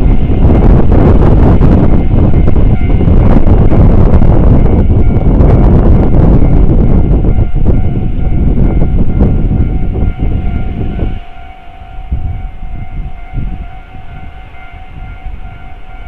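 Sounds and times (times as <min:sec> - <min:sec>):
train passing rumble: 0:00.0 - 0:16.0
level-crossing electronic bell: 0:07.9 - 0:16.0.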